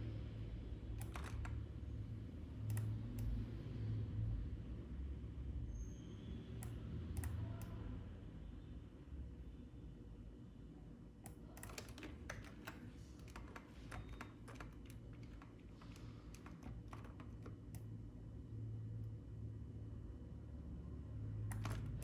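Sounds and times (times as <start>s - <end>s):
computer keyboard keys tapping: 1.0s - 1.7s, 6.6s - 7.8s, 11.2s - 18.0s, 21.5s - 22.0s.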